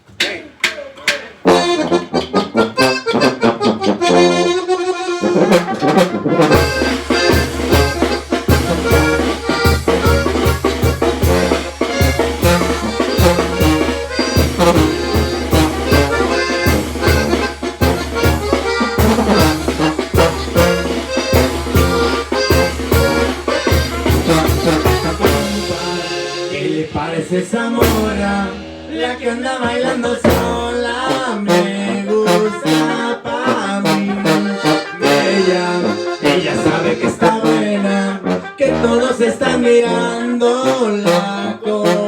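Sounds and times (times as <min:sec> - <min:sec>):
band with bass and beat: 0:00.0 - 0:04.6, 0:05.2 - 0:29.4, 0:30.1 - 0:31.0
accordion: 0:01.4 - 0:42.0.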